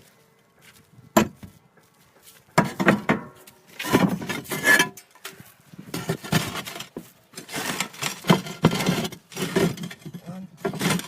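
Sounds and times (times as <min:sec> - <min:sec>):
roof tiles scraping and knocking: 0:02.6 - 0:11.0.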